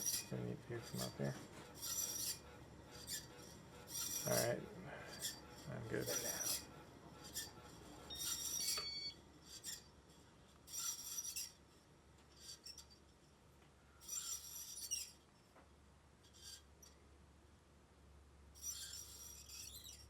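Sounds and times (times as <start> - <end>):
ceiling fan scraping rub: 0.0 - 13.3, 14.0 - 15.6, 16.2 - 17.0, 18.6 - 20.0
faint motor hum: 0.0 - 20.0.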